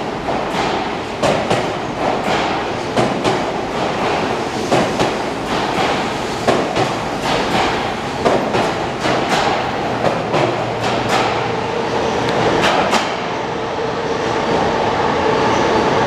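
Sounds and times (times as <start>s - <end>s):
train wheels clacking over rail joints: 0.0s - 11.7s, 12.3s - 13.4s
train rolling noise: 0.0s - 16.0s.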